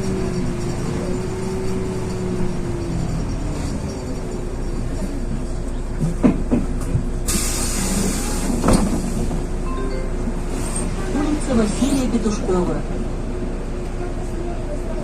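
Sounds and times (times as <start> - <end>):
bus body rattles: 0.0 - 9.6
bus engine drone: 0.0 - 15.0
compressed air hiss: 7.3 - 8.6
thump: 8.6 - 9.4.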